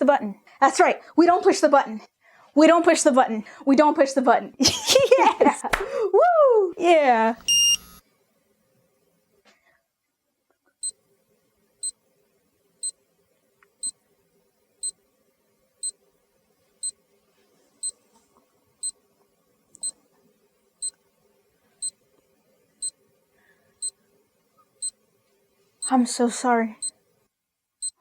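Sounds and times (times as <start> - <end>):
short high electronic beeps: 7.5 - 8.0.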